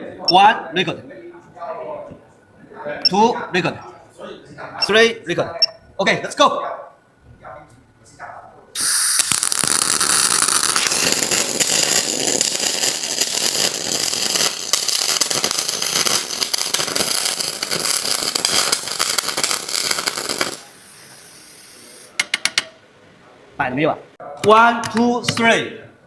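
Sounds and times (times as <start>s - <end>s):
welding arc crackling: 8.8s - 22.1s
faint steady hiss: 8.8s - 22.2s.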